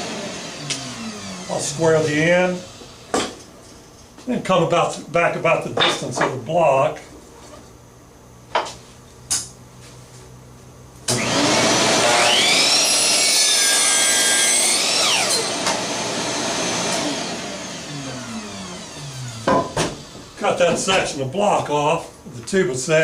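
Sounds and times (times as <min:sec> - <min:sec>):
miter saw motor whine: 0:00.0 - 0:03.2, 0:11.1 - 0:20.4
saw blade cutting board: 0:11.1 - 0:20.4.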